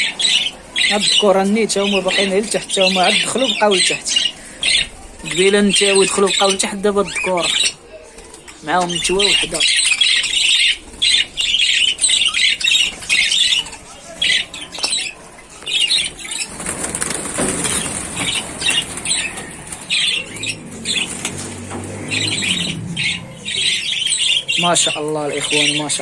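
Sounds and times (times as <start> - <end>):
budgerigars chattering: 0.0 - 26.0
wings flapping: 2.1 - 23.8.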